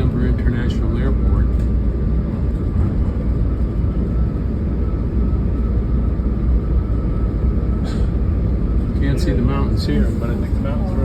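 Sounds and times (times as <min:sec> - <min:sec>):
faint steady whine: 0:00.0 - 0:11.0
train running rumble: 0:00.0 - 0:11.0.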